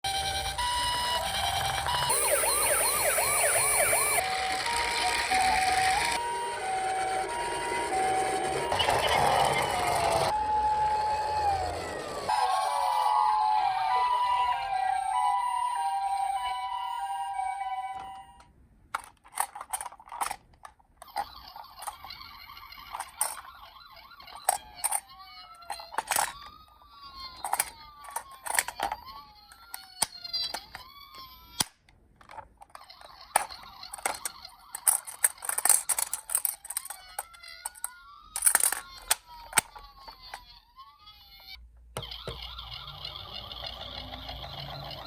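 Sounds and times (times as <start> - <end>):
electronic toy siren wailing: 0.1 - 18.5, 21.1 - 31.4, 33.6 - 45.0
plastic toy clicks and knocks: 18.9 - 23.6, 24.2 - 40.6.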